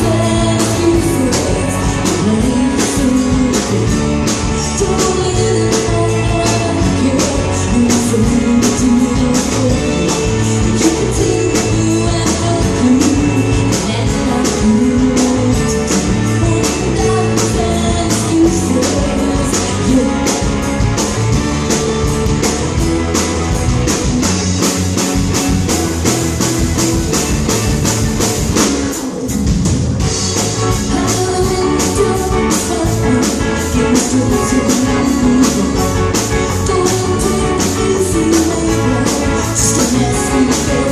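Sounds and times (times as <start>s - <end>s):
person singing: 0.0s - 20.6s, 30.6s - 40.9s
rock song with guitar and drums: 0.0s - 40.9s.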